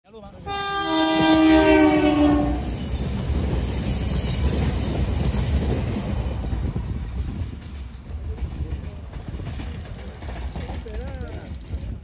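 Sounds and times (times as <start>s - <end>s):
train rumbling past: 0.1s - 12.0s
locomotive horn: 0.5s - 2.7s.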